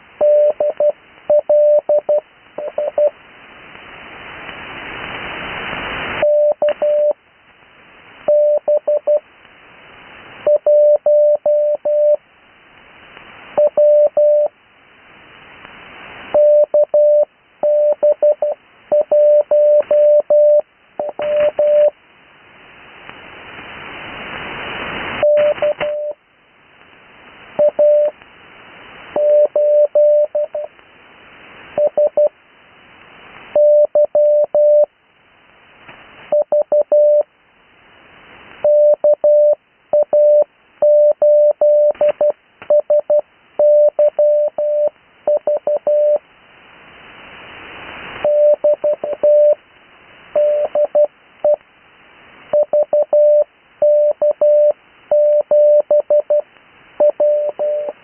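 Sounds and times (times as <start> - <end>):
radio static hiss: 0.0 - 58.0
morse code tone: 6.2 - 7.2, 16.4 - 21.9, 25.2 - 26.2, 29.2 - 30.7, 38.6 - 46.2, 48.2 - 49.6, 50.4 - 51.6, 52.5 - 56.4, 57.0 - 58.0.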